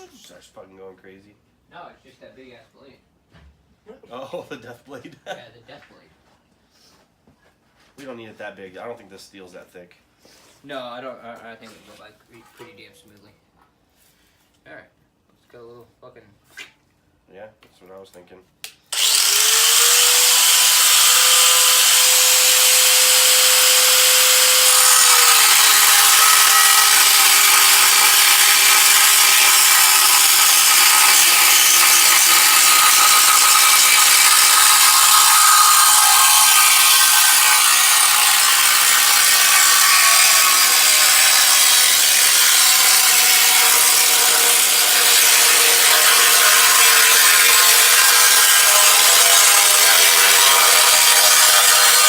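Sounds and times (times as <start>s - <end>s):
power tool cutting sheet steel: 18.9s - 52.0s.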